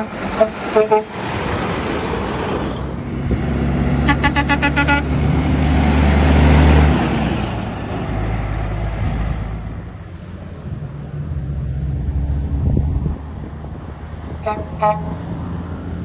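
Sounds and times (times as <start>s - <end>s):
diesel engine drone: 0.0s - 16.0s
truck passing by: 0.0s - 16.0s
short horn toots: 4.0s - 5.2s, 14.4s - 15.2s.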